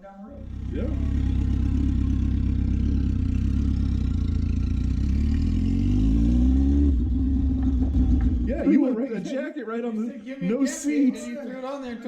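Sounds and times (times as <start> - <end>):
motorcycle engine idling and revving: 0.3 - 8.7.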